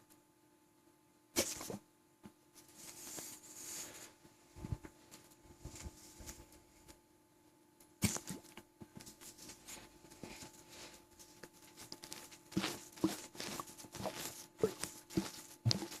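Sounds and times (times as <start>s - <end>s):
stomach gurgling and clicking: 11.4s - 16.0s.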